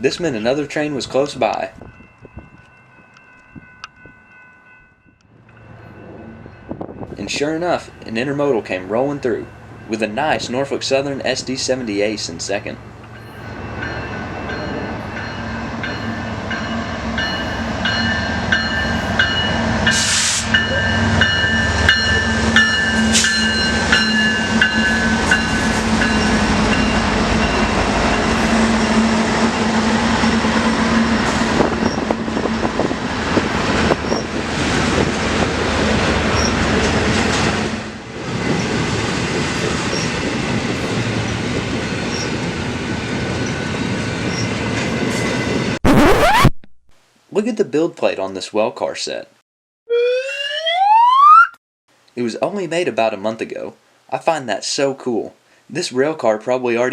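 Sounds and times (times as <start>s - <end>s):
freight train rumble: 0.0s - 45.8s
wheel squeal: 36.3s - 36.6s.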